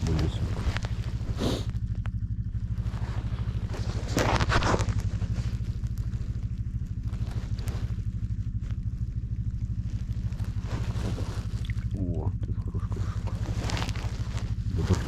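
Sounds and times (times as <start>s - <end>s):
rustling scrape: 0.0s - 1.8s, 2.6s - 9.1s, 9.7s - 11.9s, 12.9s - 15.0s
engine idling: 0.0s - 15.0s.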